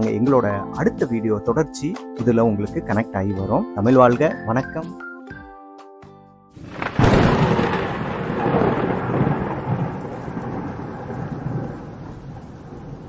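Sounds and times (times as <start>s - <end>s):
rain hissing: 6.6s - 13.0s
thunderclap and rolling rumble: 6.6s - 13.0s.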